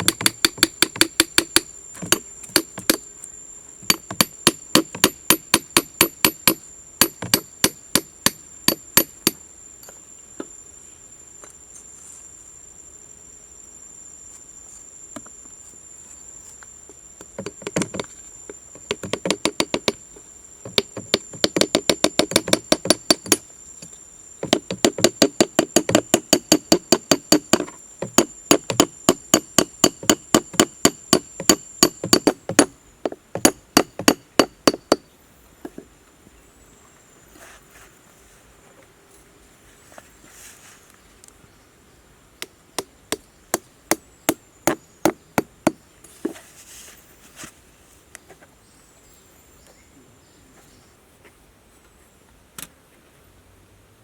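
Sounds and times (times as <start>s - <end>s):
sharp tapping strokes: 0.0s - 3.1s, 18.8s - 20.0s, 20.6s - 23.4s, 24.4s - 35.0s
high insect drone: 0.0s - 48.0s.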